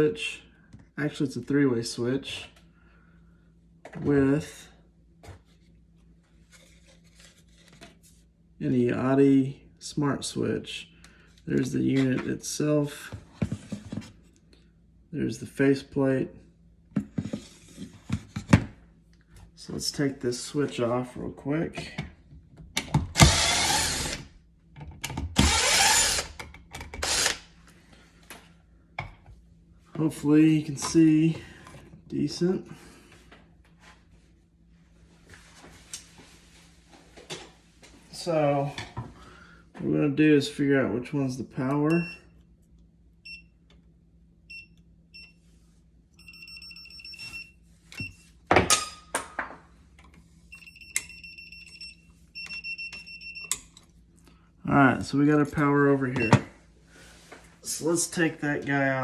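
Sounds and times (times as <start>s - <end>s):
power drill whirring: 23.1s - 24.3s, 25.4s - 26.4s, 27.0s - 27.5s
voltage tester beeping: 46.2s - 48.1s, 50.5s - 53.6s.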